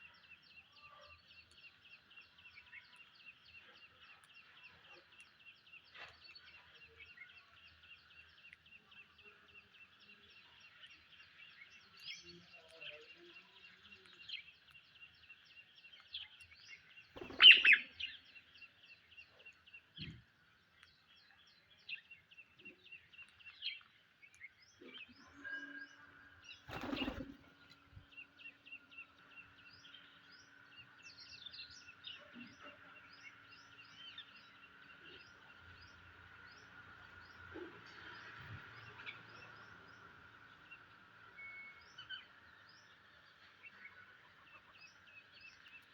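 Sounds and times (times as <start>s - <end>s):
parakeets chirping: 17.2s - 18.1s.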